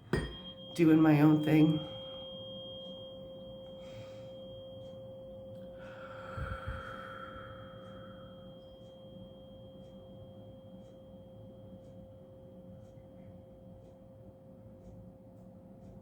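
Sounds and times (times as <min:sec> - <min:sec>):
tuning fork ringing: 0:00.0 - 0:14.8.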